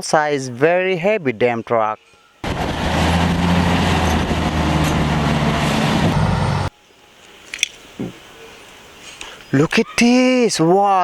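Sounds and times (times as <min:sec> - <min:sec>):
truck engine running: 0:02.4 - 0:06.7.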